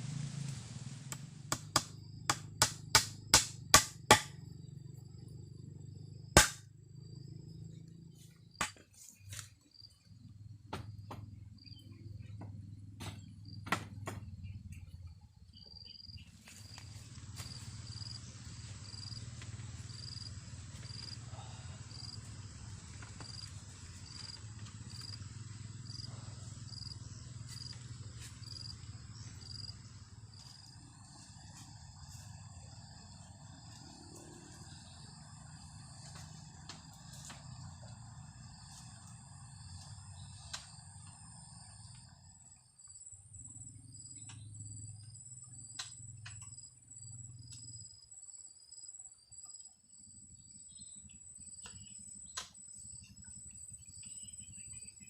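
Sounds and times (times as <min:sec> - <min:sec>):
sharp knocks: 0:01.5 - 0:04.4, 0:06.4 - 0:06.6, 0:13.0 - 0:14.3.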